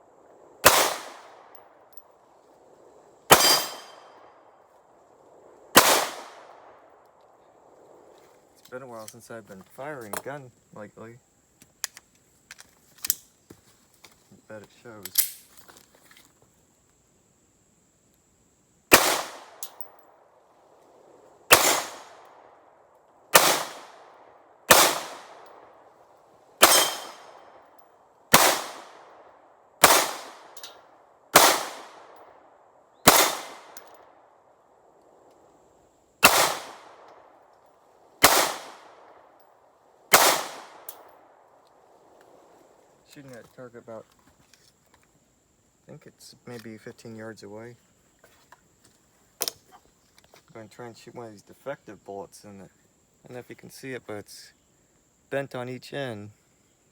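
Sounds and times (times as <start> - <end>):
pistol shots with echo: 0.6 - 1.6, 3.3 - 4.0, 5.8 - 6.5, 18.9 - 19.8, 21.5 - 22.2, 23.3 - 24.0, 24.7 - 25.6, 26.6 - 27.4, 28.3 - 29.1, 29.8 - 30.7, 31.3 - 32.2, 33.0 - 33.8, 36.2 - 37.1, 38.2 - 39.0, 40.1 - 40.9.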